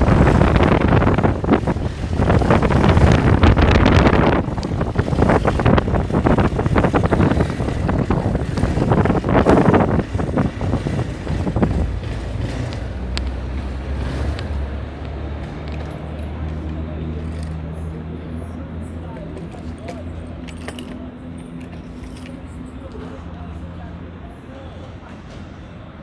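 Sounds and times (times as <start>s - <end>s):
wind buffeting microphone: 0.0s - 20.4s
low engine rumble: 0.0s - 26.0s.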